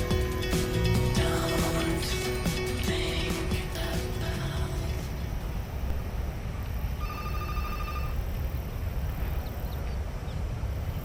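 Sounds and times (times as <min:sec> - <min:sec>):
steady low rumble: 0:00.0 - 0:07.0
telephone ringing: 0:07.0 - 0:08.2.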